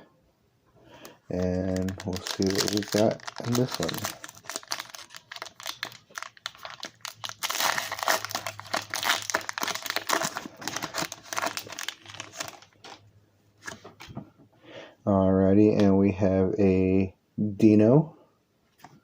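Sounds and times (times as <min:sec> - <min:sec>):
foil wrapper tearing and crinkling: 0:01.3 - 0:13.0.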